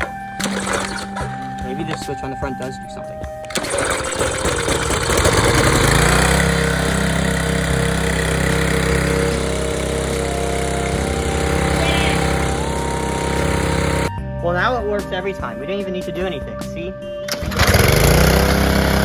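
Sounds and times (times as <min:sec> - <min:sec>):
small engine starting up: 0:00.0 - 0:01.7, 0:03.5 - 0:14.1, 0:17.3 - 0:19.0.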